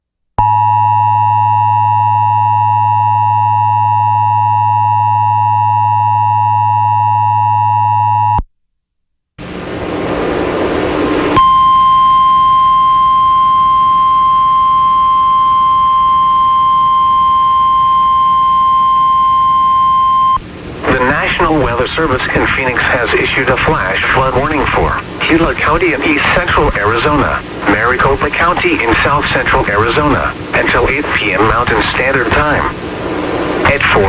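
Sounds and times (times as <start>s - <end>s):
buzzy two-tone alarm: 11.4s - 21.4s
steady weather-radio alert tone: 11.4s - 32.8s, 33.6s - 34.0s
radio static hiss: 20.4s - 34.0s.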